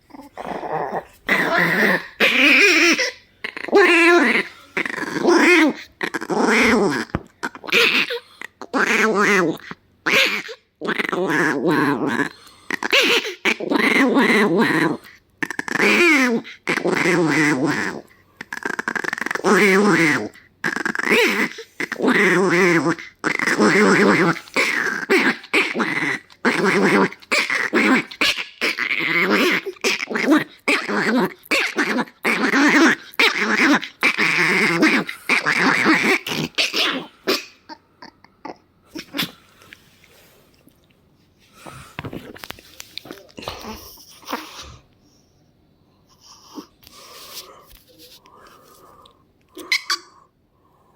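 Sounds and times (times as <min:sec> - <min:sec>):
dog making rapid noises: 0:01.0 - 0:37.6.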